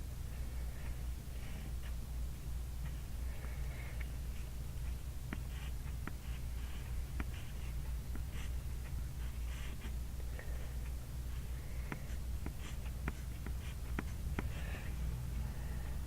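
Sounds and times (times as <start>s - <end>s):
steady low hum: 0.0s - 16.0s
pencil writing on paper: 4.8s - 15.4s.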